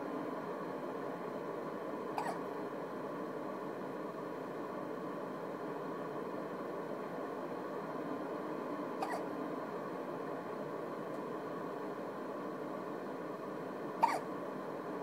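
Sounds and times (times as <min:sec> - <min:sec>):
baby hiccuping: 0:02.2 - 0:02.4, 0:09.0 - 0:09.2, 0:14.0 - 0:14.2.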